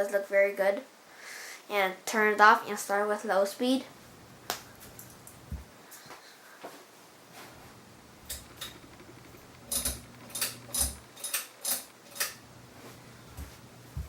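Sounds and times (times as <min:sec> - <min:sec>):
fan motor hum: 0:03.9 - 0:05.8, 0:07.4 - 0:14.0
pull-chain switch clicking: 0:08.3 - 0:12.4.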